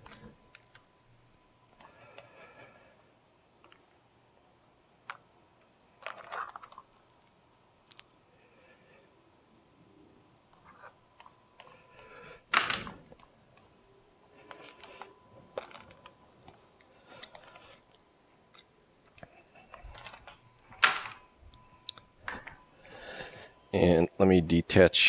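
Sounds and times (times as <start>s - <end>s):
metal tools clinking: 6.0s - 7.1s, 10.6s - 18.0s, 19.2s - 21.7s.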